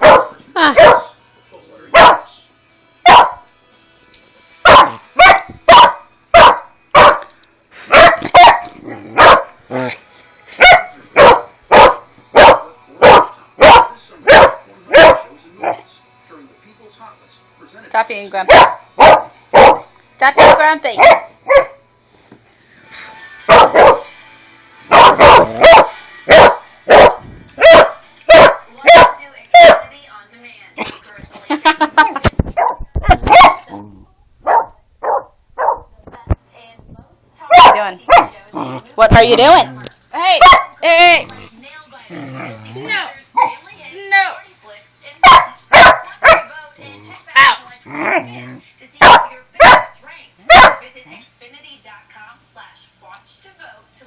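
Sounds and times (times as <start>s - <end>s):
dog barking angrily: 0.0s - 1.2s, 1.9s - 2.3s, 3.1s - 3.4s, 4.6s - 7.3s, 7.9s - 9.9s, 10.6s - 15.8s, 18.5s - 21.8s, 23.5s - 24.1s, 24.9s - 29.9s, 32.6s - 33.8s, 34.4s - 35.9s, 37.5s - 38.8s, 40.3s - 40.8s, 45.2s - 46.5s, 49.0s - 49.9s, 50.5s - 50.8s.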